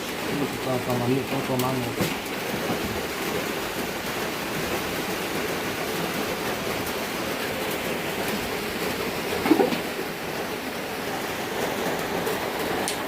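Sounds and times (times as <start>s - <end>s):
water rushing: 7.3s - 13.0s.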